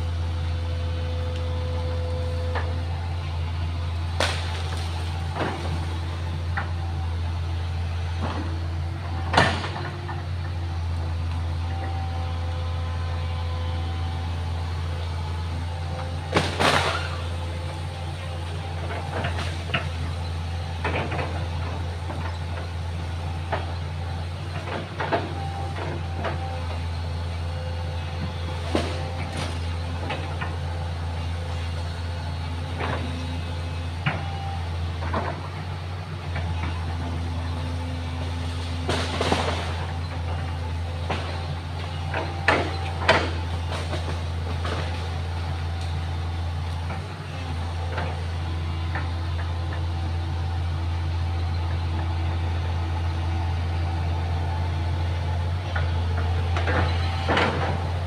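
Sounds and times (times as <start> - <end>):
excavator engine running: 0.0 - 58.0
knocks and clanks: 8.2 - 10.5.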